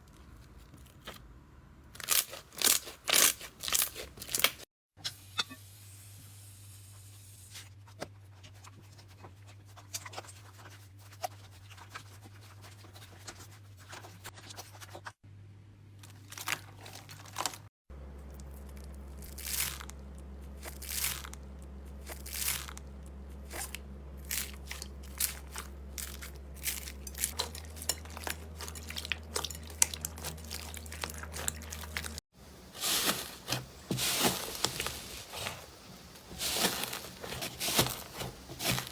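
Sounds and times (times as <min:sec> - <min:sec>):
slime crackling and popping: 0:02.0 - 0:04.6
steady low hum: 0:17.9 - 0:38.9.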